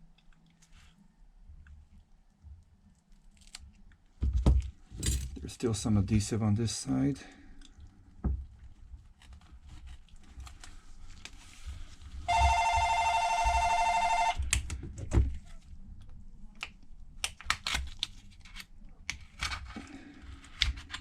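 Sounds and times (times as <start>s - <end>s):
telephone ringing: 12.3s - 14.4s.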